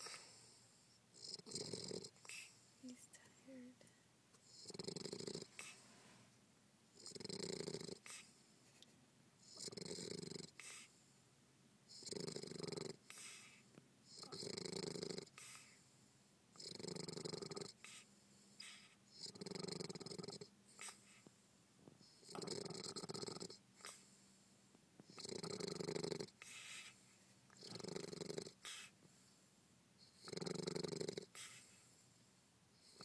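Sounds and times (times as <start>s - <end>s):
bulldog snoring: 1.1s - 2.5s, 4.4s - 5.8s, 7.0s - 8.3s, 9.4s - 10.9s, 11.9s - 15.8s, 16.6s - 21.2s, 22.0s - 24.0s, 25.0s - 29.0s, 30.0s - 31.8s, 32.8s - 33.0s.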